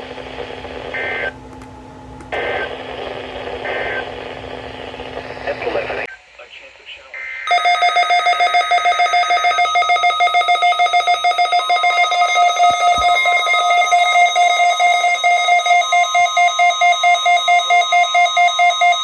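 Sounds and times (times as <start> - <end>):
rapid alarm beeping: 7.4 - 19.0
steady alarm tone: 7.4 - 19.0.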